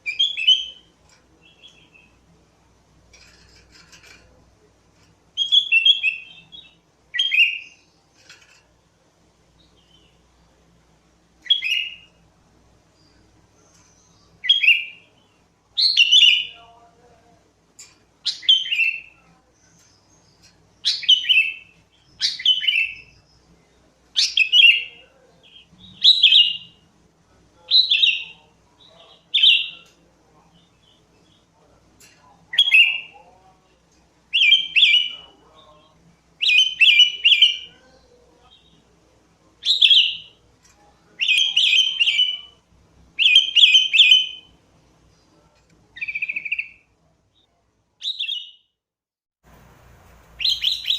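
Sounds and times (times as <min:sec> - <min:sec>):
bulbul singing: 0:00.0 - 0:02.3, 0:05.3 - 0:08.4, 0:11.4 - 0:12.2, 0:12.9 - 0:16.9, 0:17.8 - 0:26.8, 0:32.2 - 0:33.2, 0:34.3 - 0:39.0, 0:39.6 - 0:42.6, 0:43.2 - 0:45.4, 0:46.0 - 0:48.7, 0:50.4 - 0:50.9.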